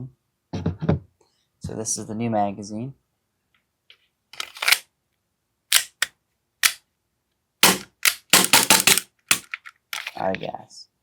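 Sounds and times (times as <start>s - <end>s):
airsoft pistol being handled: 4.4s - 4.8s, 5.7s - 6.8s, 7.6s - 10.3s
pistol mechanical clacks: 4.4s - 4.8s, 5.7s - 6.8s, 7.6s - 10.2s.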